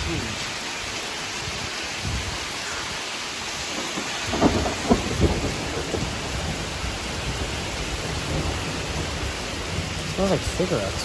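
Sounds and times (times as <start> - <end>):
steady rain: 0.0 - 11.0
thunder cracking and rumbling: 3.5 - 11.0.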